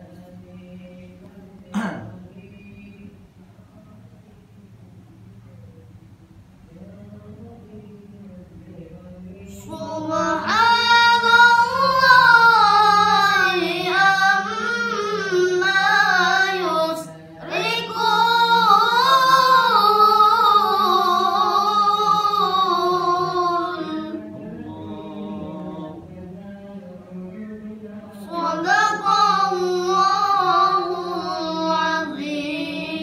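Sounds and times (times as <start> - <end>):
child reciting melodically: 9.4 - 25.9, 28.2 - 33.0.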